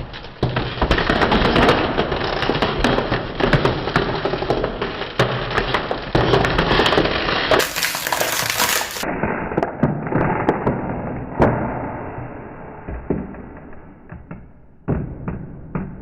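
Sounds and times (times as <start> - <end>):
plastic bottle being crushed: 6.2 - 9.0.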